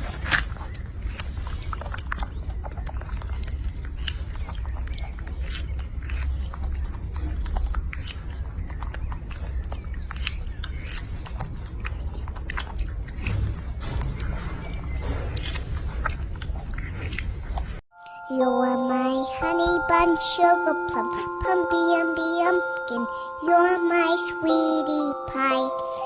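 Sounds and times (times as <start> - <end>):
animal chewing crunchy food: 0.0 - 17.8.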